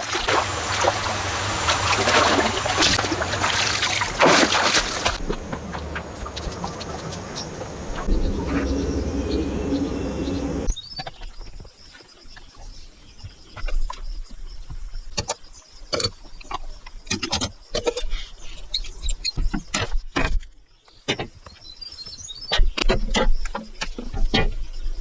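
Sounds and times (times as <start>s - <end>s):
steady noise: 0.4s - 10.7s.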